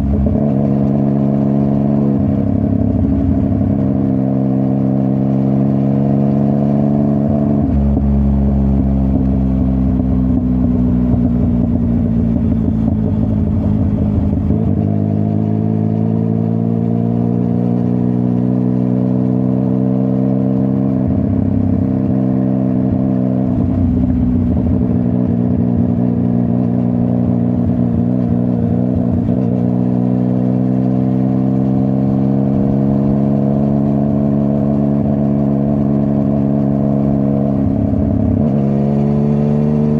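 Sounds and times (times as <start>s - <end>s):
motorcycle engine revving: 0.0s - 39.9s.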